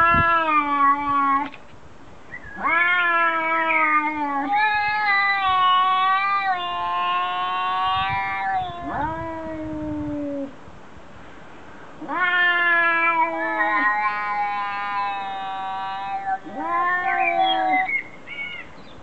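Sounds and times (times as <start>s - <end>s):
cat yowling: 0.0s - 1.5s, 2.4s - 10.5s, 12.0s - 18.0s.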